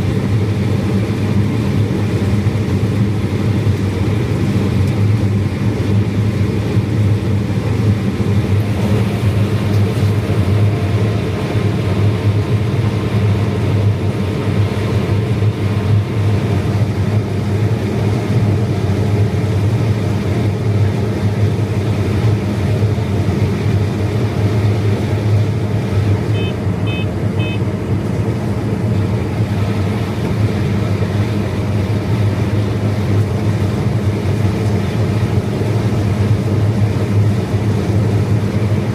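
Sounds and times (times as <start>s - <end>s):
heavy machinery engine drone: 0.0s - 38.9s
short electronic beeps: 26.3s - 27.6s.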